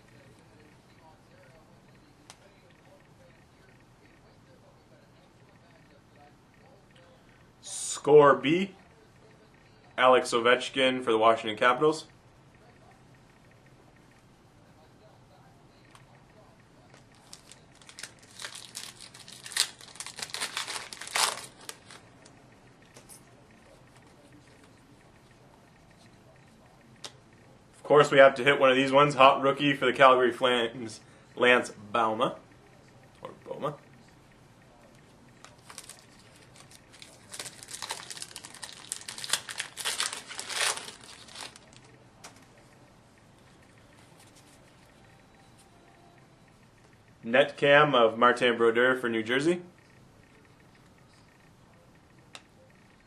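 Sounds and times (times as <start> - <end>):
plastic wrapper crinkling and tearing: 17.0 - 22.0, 35.4 - 42.0.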